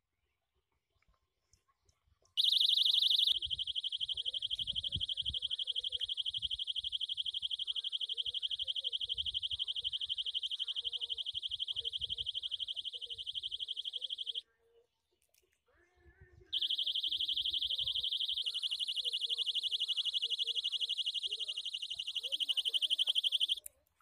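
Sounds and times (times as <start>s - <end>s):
electronic alarm buzzer beeping: 2.4s - 14.4s, 16.6s - 23.6s.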